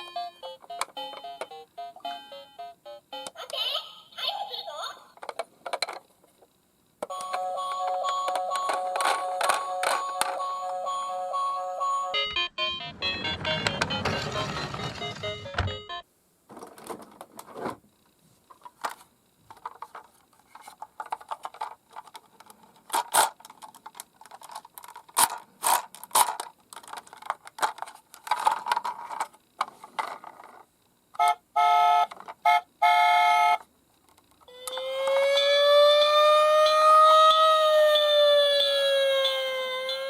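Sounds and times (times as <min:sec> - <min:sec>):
toy cars clicking and knocking: 0:07.0 - 0:10.5, 0:18.6 - 0:30.6
toy siren wailing: 0:31.2 - 0:33.6, 0:34.5 - 0:40.0.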